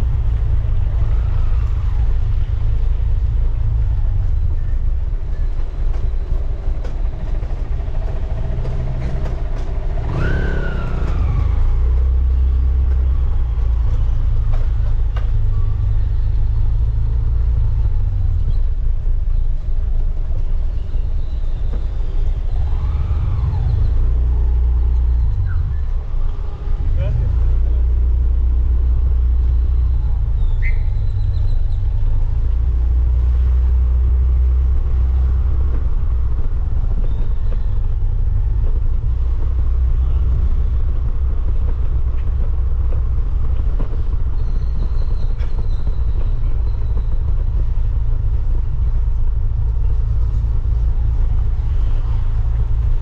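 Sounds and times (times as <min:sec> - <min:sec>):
motorcycle engine rumble: 0:00.0 - 0:53.0
road noise: 0:00.0 - 0:53.0
motorcycle engine revving: 0:07.3 - 0:14.9.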